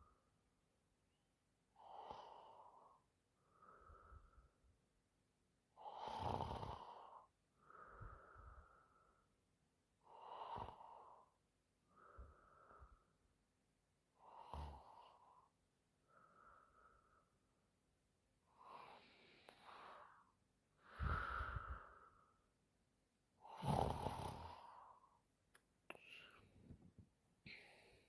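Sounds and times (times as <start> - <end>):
woman snoring: 5.8 - 7.2, 23.4 - 24.8.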